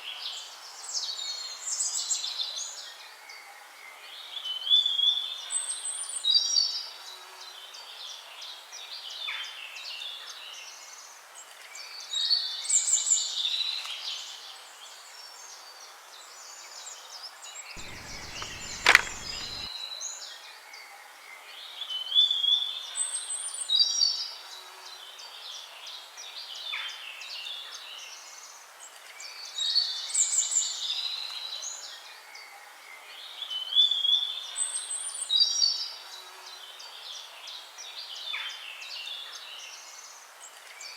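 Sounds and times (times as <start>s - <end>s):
faint steady hiss: 17.8s - 19.7s
sharp click: 17.8s - 19.7s
songbirds chirping: 17.8s - 19.7s.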